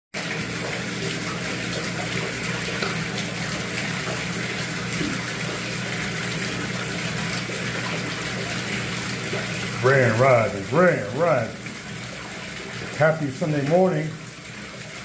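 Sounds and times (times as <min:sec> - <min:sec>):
low pump hum: 0:00.2 - 0:15.0
water splashing into tub: 0:00.2 - 0:15.0.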